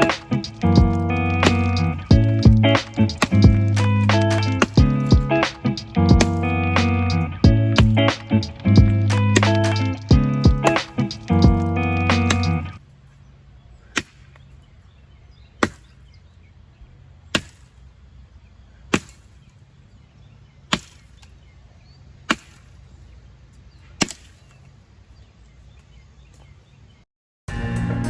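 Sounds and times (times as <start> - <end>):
axe chopping wood: 0.0 - 7.1, 7.8 - 12.8, 13.9 - 14.5, 15.6 - 16.1, 17.4 - 17.8, 18.9 - 19.5, 20.7 - 21.4, 22.2 - 22.9, 24.0 - 24.6.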